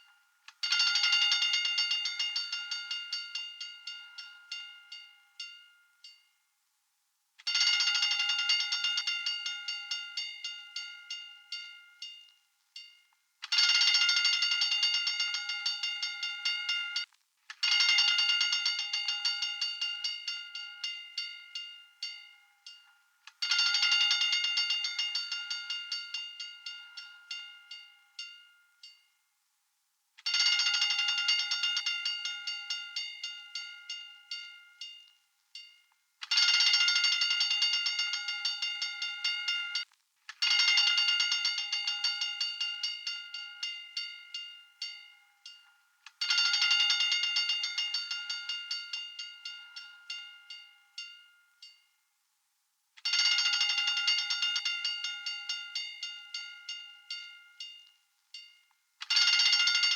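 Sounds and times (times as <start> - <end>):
fire alarm bell ringing: 0.0 - 6.2, 7.5 - 29.0, 30.3 - 51.8, 53.0 - 59.9.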